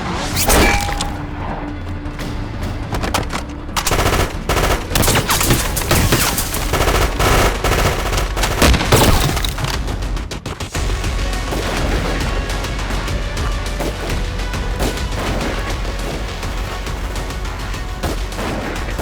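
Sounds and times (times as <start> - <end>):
rifle and machine-gun fire: 3.8 - 19.0.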